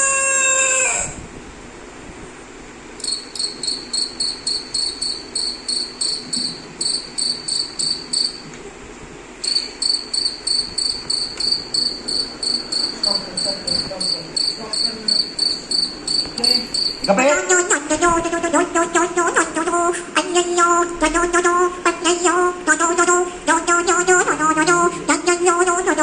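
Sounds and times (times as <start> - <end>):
cricket chirping: 3.0 - 8.5, 9.4 - 17.2.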